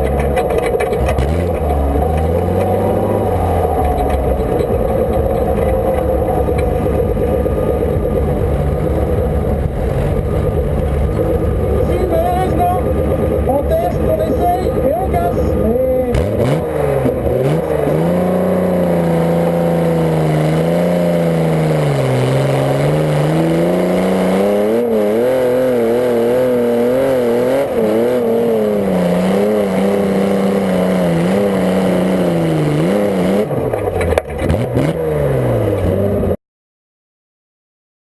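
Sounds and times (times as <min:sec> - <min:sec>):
tractor engine running under load: 0:00.0 - 0:25.0.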